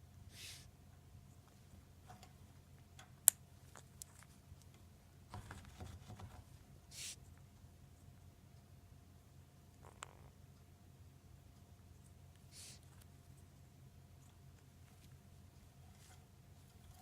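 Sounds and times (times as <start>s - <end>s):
parrot sniffing hiss: 0.3s - 0.7s, 6.9s - 7.2s, 12.5s - 12.9s.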